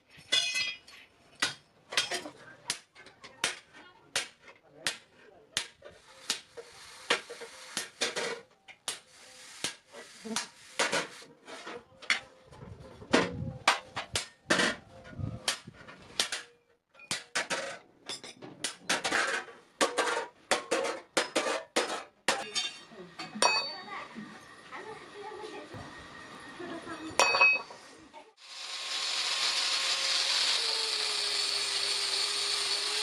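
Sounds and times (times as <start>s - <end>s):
hammer striking steel on anvil: 22.3s - 23.9s.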